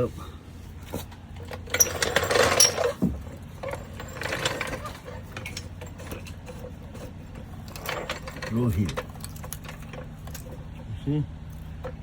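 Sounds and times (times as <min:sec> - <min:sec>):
floor jack clicking and creaking: 0:01.4 - 0:10.6.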